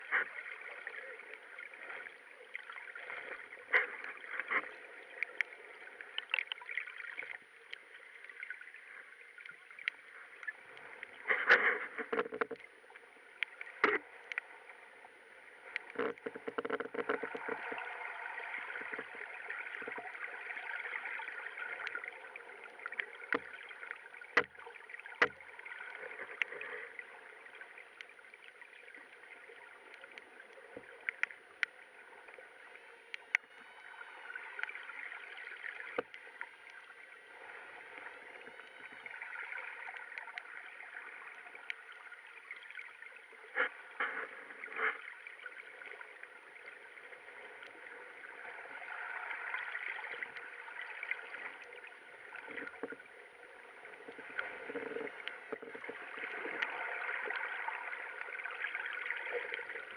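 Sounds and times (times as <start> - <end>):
steady watery hiss: 7.2 - 59.9
sharp underwater clicks: 9.8 - 12.7, 13.3 - 14.5, 22.7 - 26.9, 33.1 - 36.9.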